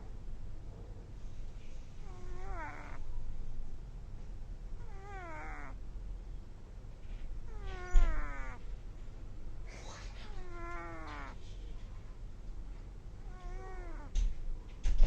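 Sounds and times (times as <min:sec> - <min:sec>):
kitten snoring: 0:02.0 - 0:03.0, 0:04.8 - 0:05.8, 0:07.5 - 0:08.6, 0:09.8 - 0:11.4, 0:13.2 - 0:14.2.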